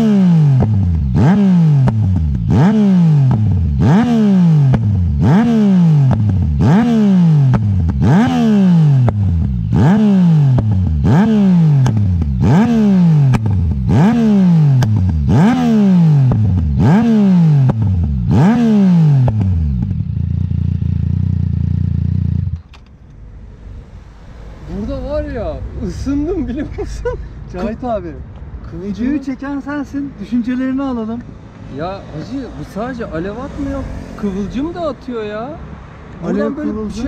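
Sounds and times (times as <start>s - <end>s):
motorcycle engine revving: 0.0s - 27.0s, 29.7s - 35.6s
motorcycle engine idling: 1.8s - 23.1s.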